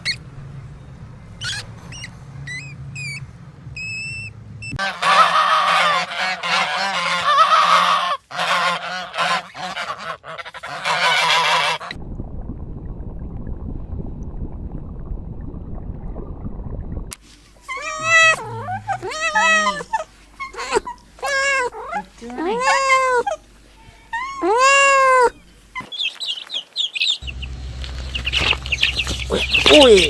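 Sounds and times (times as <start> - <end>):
waterfowl honking: 4.8 - 12.0, 17.6 - 30.0
steady low rumble: 11.9 - 19.2, 27.2 - 30.0.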